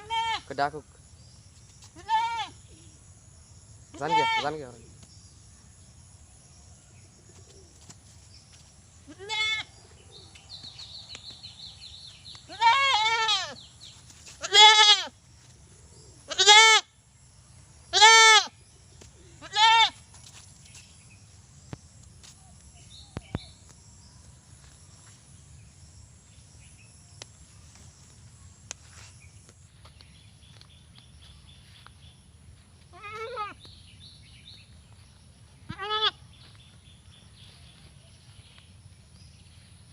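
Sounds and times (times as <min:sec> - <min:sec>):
goat bleating: 0:00.0 - 0:00.5, 0:02.0 - 0:02.6, 0:04.0 - 0:04.5, 0:09.1 - 0:09.7, 0:12.5 - 0:13.6, 0:14.4 - 0:15.1, 0:16.3 - 0:16.8, 0:17.9 - 0:18.5, 0:19.4 - 0:20.0, 0:32.9 - 0:33.6, 0:35.7 - 0:36.2.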